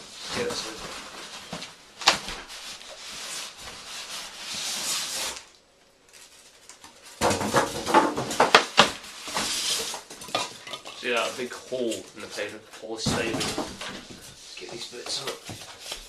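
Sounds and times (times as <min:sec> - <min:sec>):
polystyrene and cardboard scraping: 0:00.0 - 0:16.0
sharp knocks and rattles: 0:07.2 - 0:09.0.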